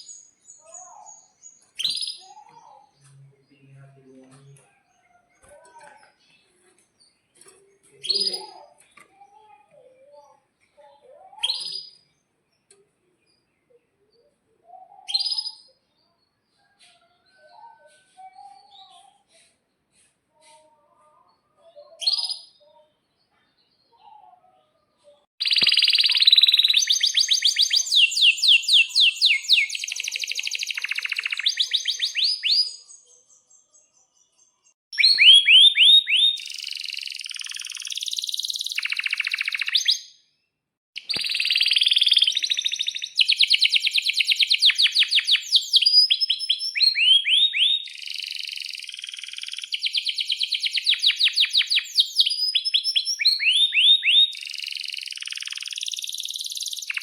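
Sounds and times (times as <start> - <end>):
canary singing trills: 0.0 - 19.5, 25.4 - 40.2, 41.0 - 57.0.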